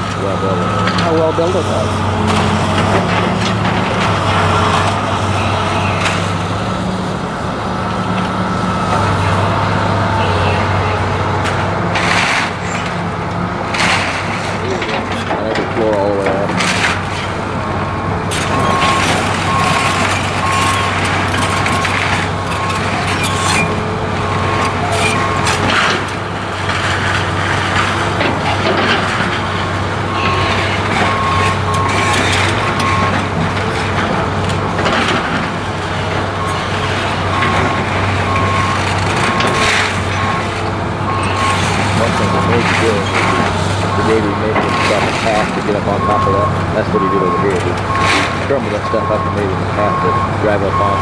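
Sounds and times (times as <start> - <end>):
diesel engine running: 0.0 - 51.0
wooden timbers cracking and crashing: 1.8 - 6.6, 11.4 - 17.6, 18.3 - 48.8
backup alarm beeping: 18.5 - 25.6, 30.1 - 33.2, 36.3 - 43.0, 45.9 - 51.0.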